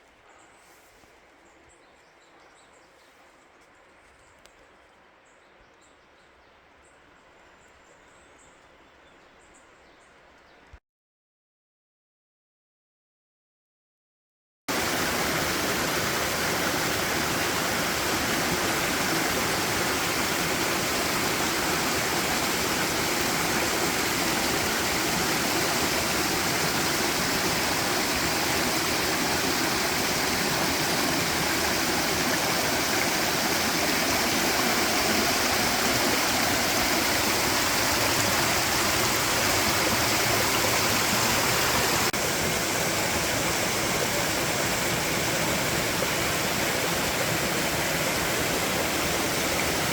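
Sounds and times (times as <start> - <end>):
stream rushing: 14.7 - 49.9.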